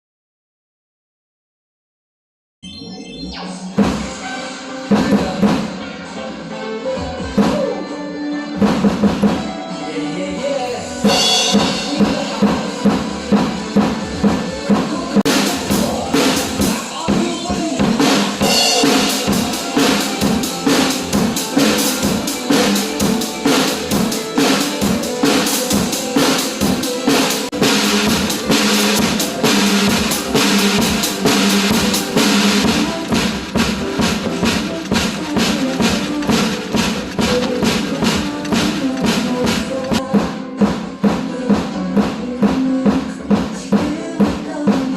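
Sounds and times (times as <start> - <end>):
pop song backing track: 3.2 - 44.9
drum kit beat: 4.9 - 5.8, 8.6 - 9.5, 11.0 - 44.9.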